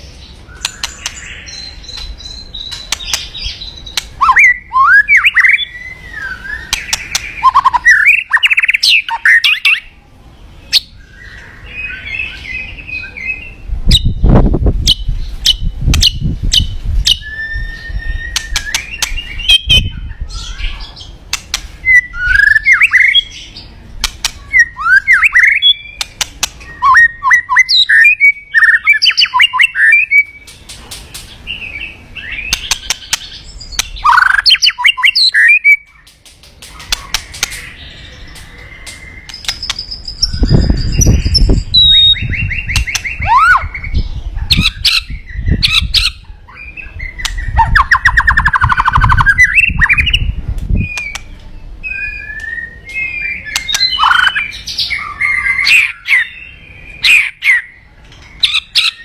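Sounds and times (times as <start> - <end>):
bird singing: 0.0 - 59.0
sharp clicks: 0.6 - 1.2, 2.7 - 3.3, 21.3 - 21.7, 26.0 - 26.7, 32.5 - 34.0, 36.0 - 37.7, 38.3 - 39.9, 42.7 - 43.1, 53.5 - 53.9.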